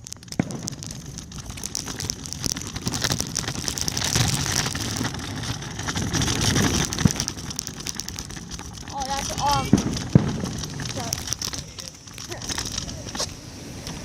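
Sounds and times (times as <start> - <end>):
fireworks crackling: 0.0 - 14.0
low fireworks booms: 0.0 - 14.0.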